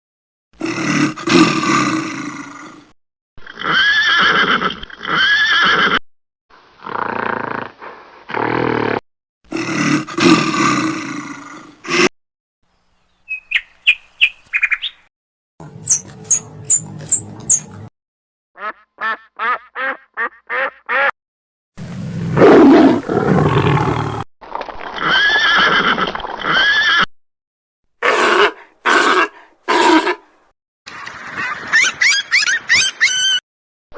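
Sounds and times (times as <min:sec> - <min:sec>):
high chirping calls: 0:13.1 - 0:15.1, 0:15.8 - 0:17.7
animal calls: 0:15.8 - 0:17.7.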